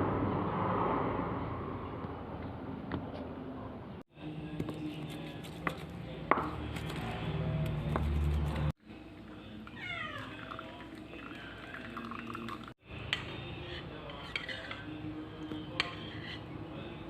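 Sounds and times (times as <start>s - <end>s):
cat meowing: 9.8s - 10.4s.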